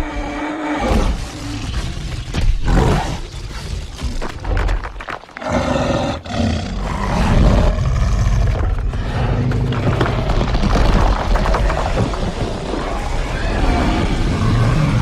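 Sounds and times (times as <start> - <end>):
dinosaur roaring: 5.4 - 10.6.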